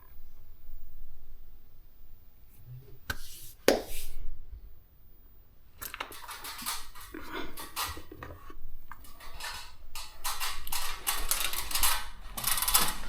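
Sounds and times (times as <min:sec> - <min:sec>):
rustling and clattering: 0:05.9 - 0:13.0.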